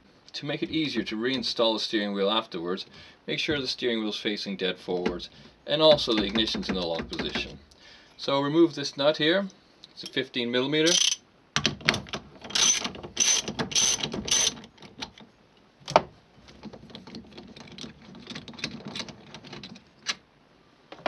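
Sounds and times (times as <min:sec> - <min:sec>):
socket ratchet clicking: 0:10.9 - 0:11.7, 0:12.5 - 0:14.6.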